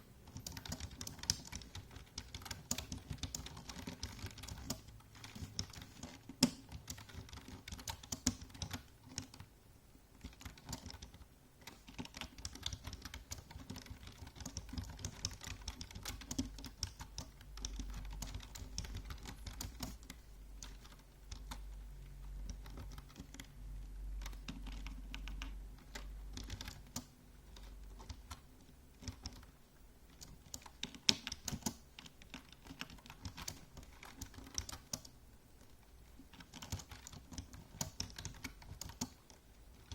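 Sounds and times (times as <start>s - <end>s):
computer keyboard typing: 0.2s - 9.5s, 10.2s - 35.2s, 36.2s - 39.9s
faint low rumble: 16.5s - 30.5s.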